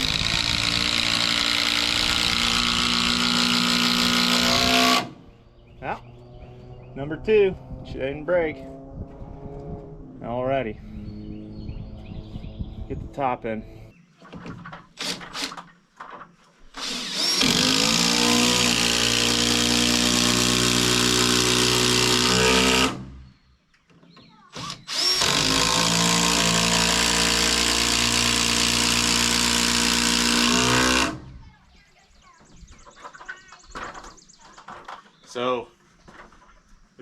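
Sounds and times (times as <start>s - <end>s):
power drill drilling into wood: 0.0s - 5.2s, 15.0s - 15.6s, 16.7s - 23.2s, 24.5s - 31.4s.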